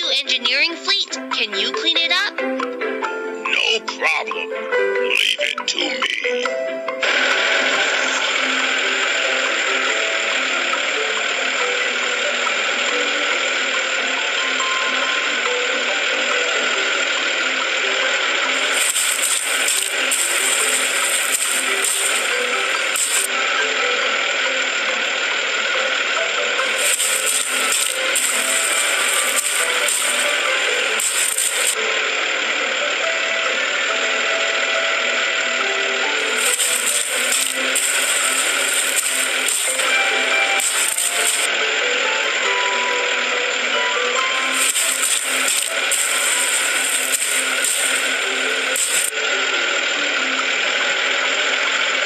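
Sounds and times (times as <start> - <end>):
mechanical rattling and ratcheting: 18.4 - 23.3, 26.6 - 31.8, 36.2 - 41.5, 44.4 - 49.1.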